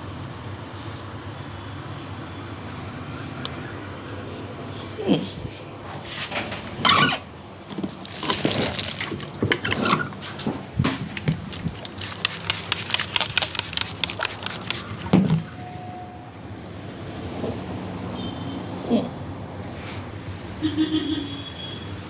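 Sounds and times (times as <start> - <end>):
hands rubbing head: 11.8 - 15.0.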